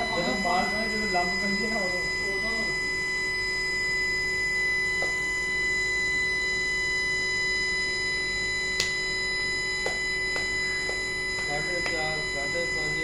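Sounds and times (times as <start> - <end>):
furnace electrical hum: 0.0 - 13.0.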